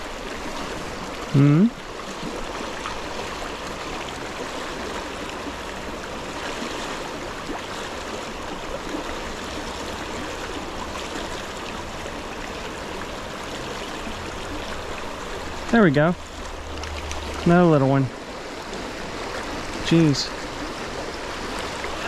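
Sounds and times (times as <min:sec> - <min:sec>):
stream flowing: 0:00.0 - 0:22.0.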